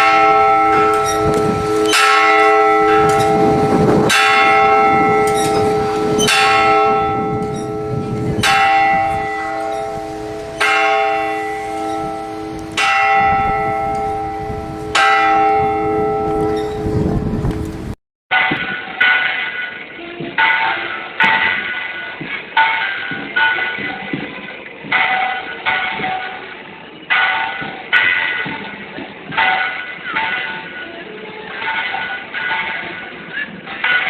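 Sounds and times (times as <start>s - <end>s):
church bell tolling: 0.0s - 22.0s, 22.6s - 24.1s, 24.9s - 34.0s.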